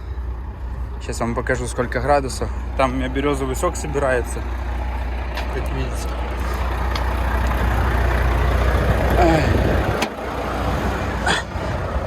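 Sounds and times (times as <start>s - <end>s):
diesel truck engine idling: 0.0s - 12.0s.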